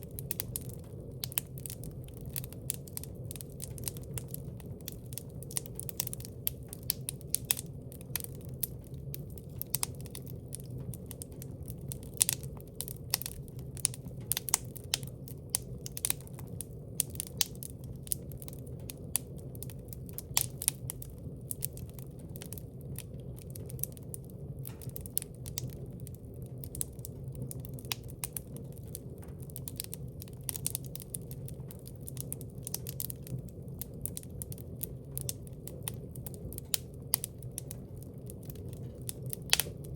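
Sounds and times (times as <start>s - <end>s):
wood fire crackling and popping: 0.0s - 39.9s.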